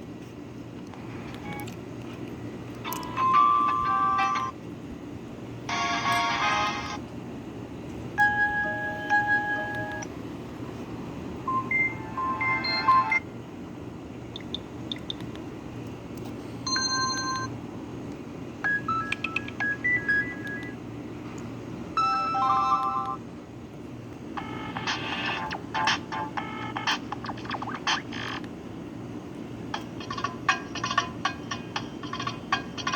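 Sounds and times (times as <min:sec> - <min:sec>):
steady low background noise: 0:00.0 - 0:32.9
phone ringtone snippets: 0:08.2 - 0:10.1, 0:11.5 - 0:13.2, 0:18.7 - 0:20.7.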